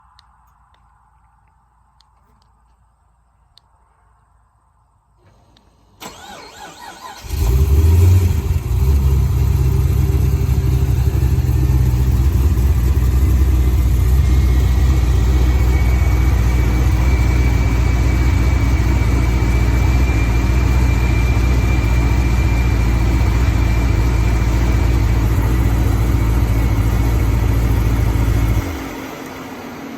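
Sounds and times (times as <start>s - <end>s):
car engine starting and idling: 5.2s - 29.9s
faint high whine: 8.4s - 29.9s.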